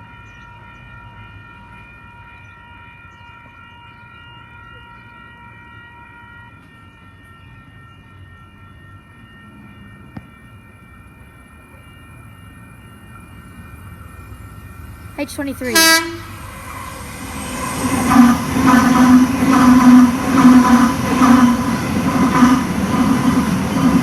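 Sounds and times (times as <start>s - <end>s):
electric train whine: 0.0s - 24.0s.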